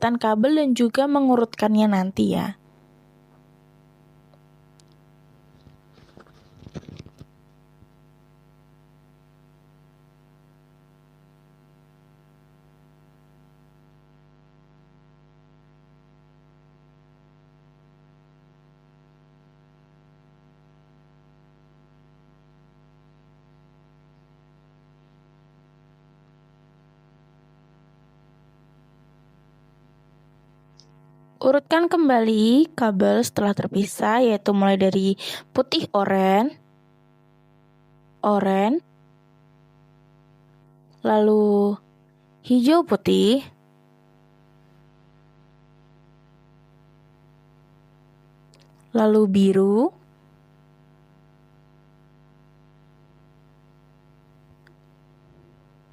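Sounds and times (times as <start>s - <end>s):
electrical mains hum: 0.0s - 55.9s.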